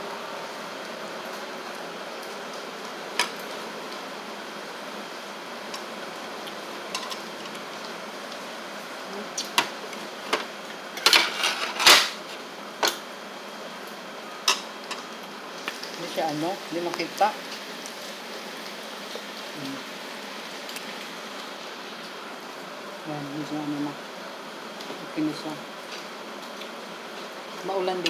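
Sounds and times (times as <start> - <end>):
cutlery clinking on dishes: 11.1 - 12.2
rain hissing: 15.1 - 28.0.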